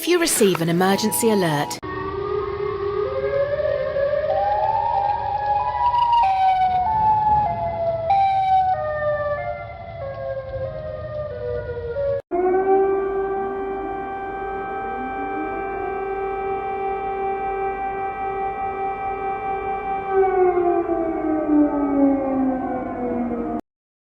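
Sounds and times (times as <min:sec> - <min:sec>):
steady alert tone: 0:00.0 - 0:01.8
emergency alert siren: 0:00.0 - 0:23.6.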